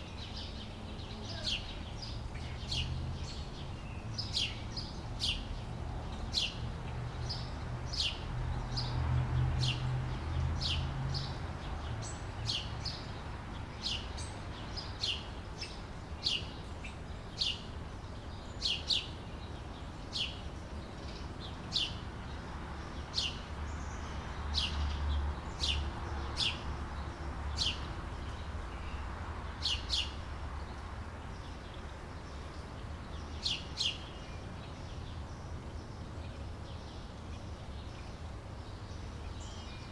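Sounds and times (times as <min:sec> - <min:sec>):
bird chirping: 0:22.8 - 0:39.9.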